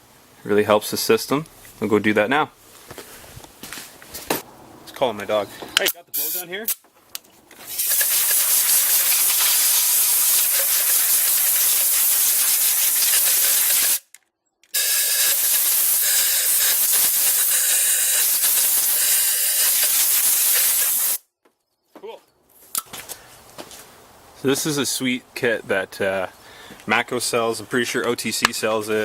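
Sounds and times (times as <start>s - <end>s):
compressed air blowgun hissing: 7.7s - 14.0s, 14.8s - 21.2s.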